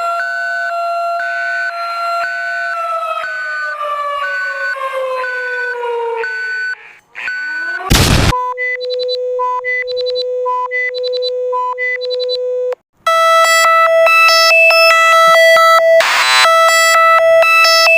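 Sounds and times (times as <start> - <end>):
emergency alert beeps: 3.4 - 17.9
burst of static: 7.9 - 8.3.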